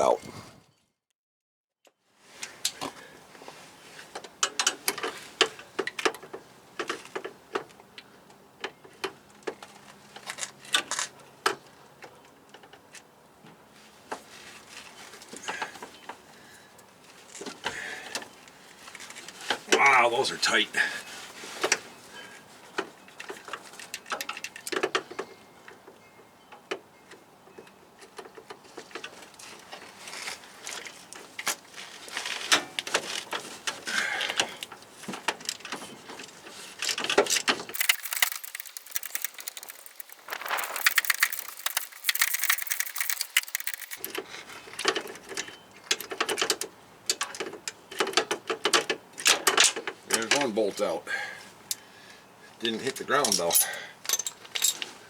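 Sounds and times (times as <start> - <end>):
ratchet clicking: 37.8 - 44.1.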